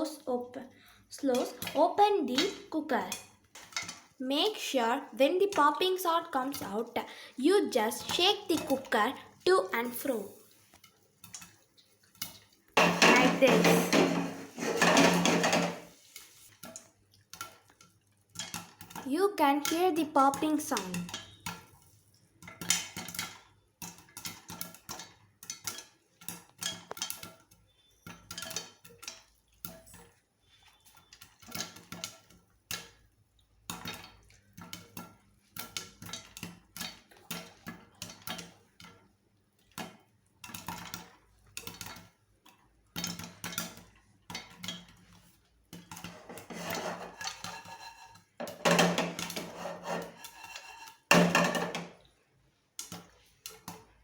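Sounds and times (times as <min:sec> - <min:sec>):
popcorn kernels popping: 0:12.8 - 0:15.9, 0:22.4 - 0:29.2
metal cooker rattling: 0:12.8 - 0:16.0, 0:45.9 - 0:52.0.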